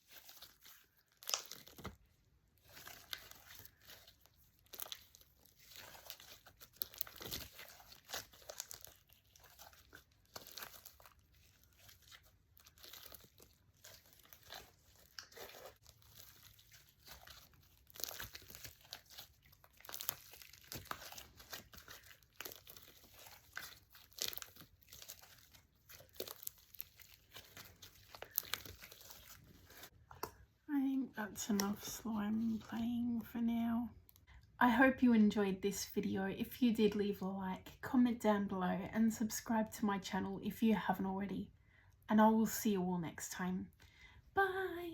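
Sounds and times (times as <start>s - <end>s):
hands squishing slime: 0.0s - 30.5s.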